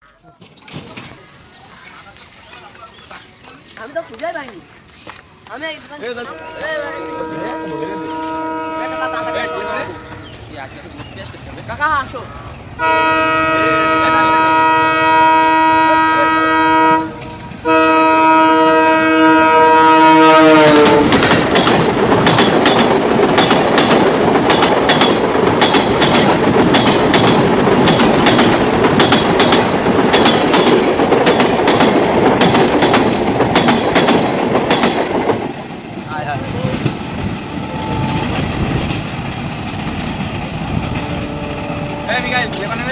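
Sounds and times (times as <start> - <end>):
train wheels clicking over rail joints: 0.0 - 1.6, 16.9 - 42.9
locomotive horn blasts: 6.2 - 10.2, 12.8 - 21.2, 37.6 - 38.5, 41.0 - 42.9.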